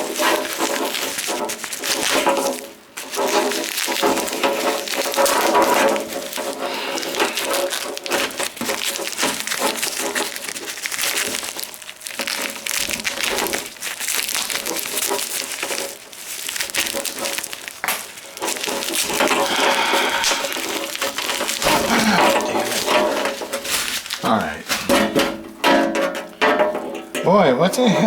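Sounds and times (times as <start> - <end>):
packing material crinkling: 0.0 - 25.5.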